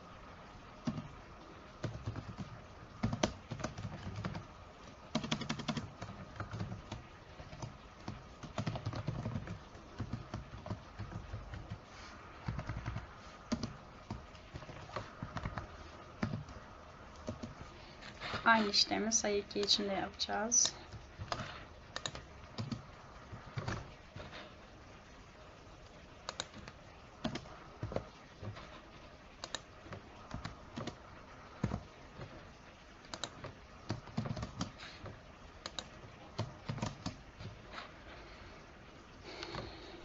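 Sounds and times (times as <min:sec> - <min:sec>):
computer keyboard typing: 0:00.8 - 0:01.2, 0:01.8 - 0:18.6, 0:20.5 - 0:24.5, 0:25.8 - 0:28.8, 0:29.4 - 0:32.4, 0:33.1 - 0:37.6.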